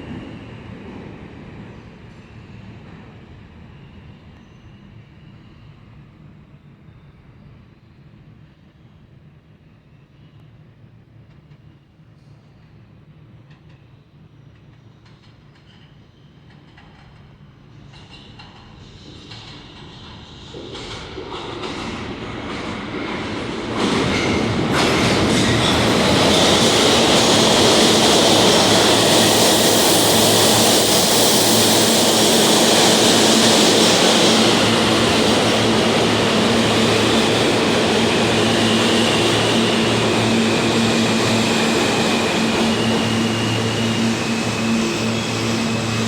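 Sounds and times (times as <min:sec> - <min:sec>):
subway train wheels rumbling: 0:00.0 - 0:46.0
train high whine: 0:13.5 - 0:46.0.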